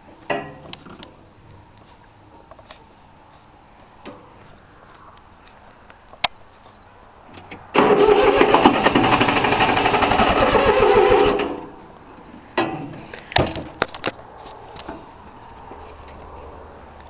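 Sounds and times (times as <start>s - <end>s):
diesel engine cranking on starter: 7.7s - 11.8s.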